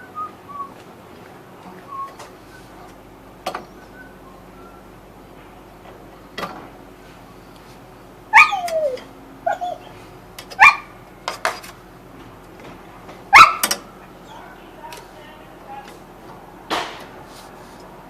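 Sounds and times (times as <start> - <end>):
dog barking: 8.3 - 10.0, 10.6 - 11.0, 13.3 - 13.7, 14.3 - 14.7
dog whining: 8.3 - 10.0, 10.6 - 11.0, 13.3 - 14.6.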